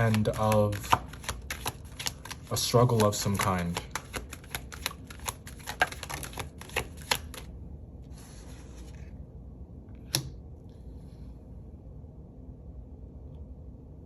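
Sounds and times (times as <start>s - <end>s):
card snapping: 0.0s - 7.4s
cards clicking while shuffled: 0.0s - 7.5s
soft card rustle: 0.0s - 9.2s.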